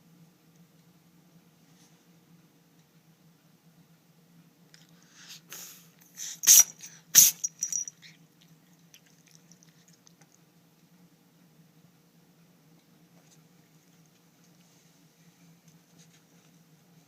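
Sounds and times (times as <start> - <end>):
kitten sneezing: 5.2 - 7.7.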